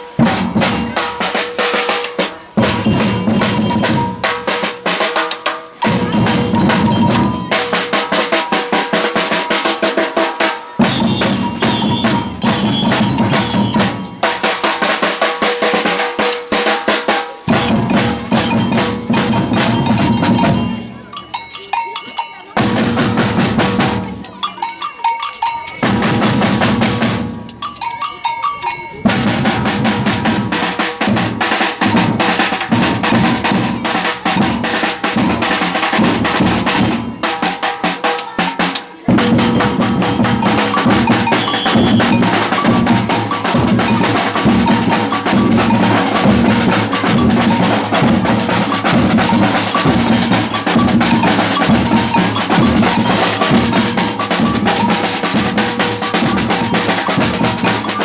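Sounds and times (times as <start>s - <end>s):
bass drums: 0.0s - 1.1s, 2.5s - 4.5s, 5.9s - 7.7s, 10.8s - 14.8s, 17.5s - 20.9s, 22.6s - 24.3s, 25.8s - 27.7s, 29.0s - 37.3s, 39.1s - 58.0s
ringing percussion bells: 0.0s - 58.0s
samba percussion ensemble: 0.0s - 58.0s.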